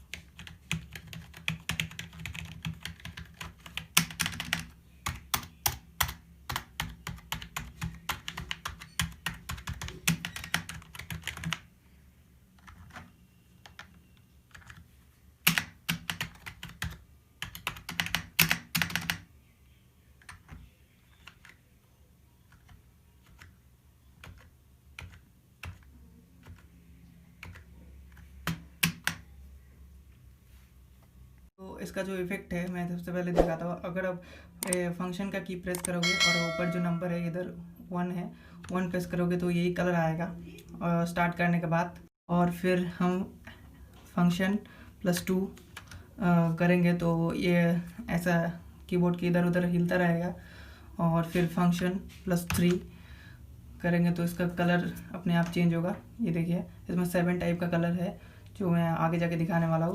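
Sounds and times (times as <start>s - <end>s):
keyboard typing: 0.0s - 11.7s, 12.6s - 19.3s, 22.5s - 23.6s, 24.2s - 26.7s, 27.4s - 29.3s.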